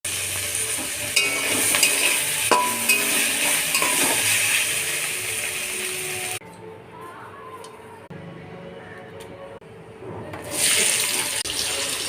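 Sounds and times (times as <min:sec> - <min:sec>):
curry sizzling in a pan: 0:00.1 - 0:06.4, 0:10.5 - 0:12.0
utensil clinking against pan: 0:01.2 - 0:04.4.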